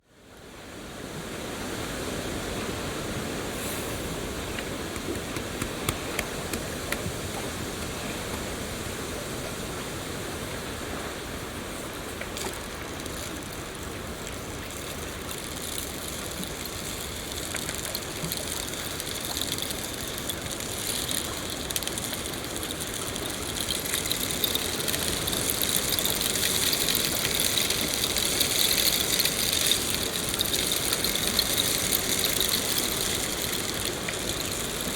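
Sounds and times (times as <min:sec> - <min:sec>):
steady falling rain: 0:02.3 - 0:34.9
raindrops ticking: 0:04.4 - 0:08.4, 0:12.3 - 0:34.9.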